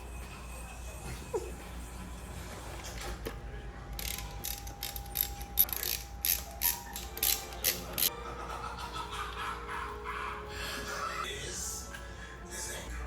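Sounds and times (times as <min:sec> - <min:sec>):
ratchet wrench clicking: 0:04.0 - 0:08.1.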